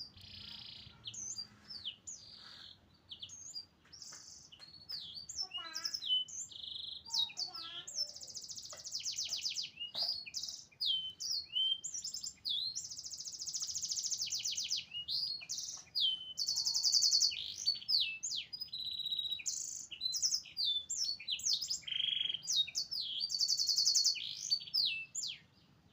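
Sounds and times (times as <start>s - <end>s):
canary singing: 0.0s - 25.8s.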